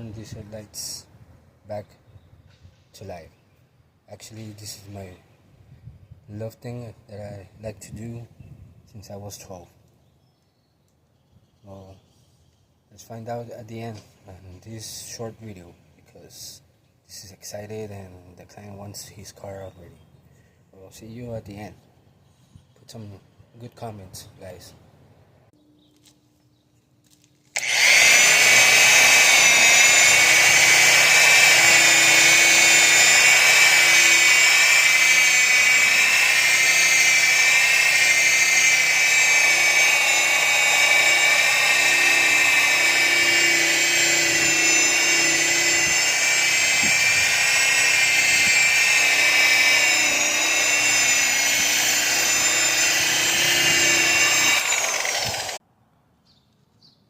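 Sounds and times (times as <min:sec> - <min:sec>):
power tool whining: 0:27.5 - 0:55.6.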